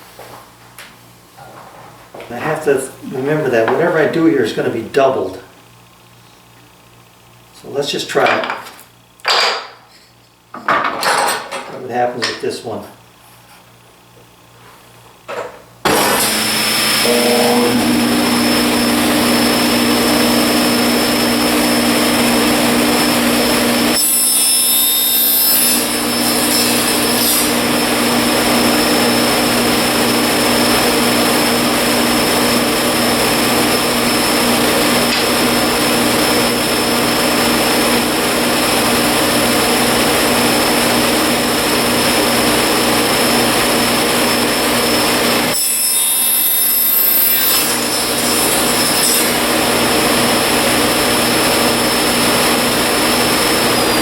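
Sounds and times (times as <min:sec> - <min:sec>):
electric saw cutting wood: 0:15.8 - 0:54.0.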